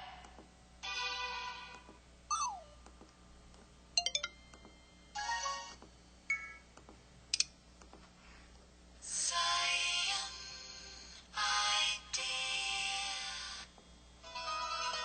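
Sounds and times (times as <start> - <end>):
melodic phone alert: 2.3 - 2.8, 4.0 - 4.4
phone chirps: 2.3 - 2.8.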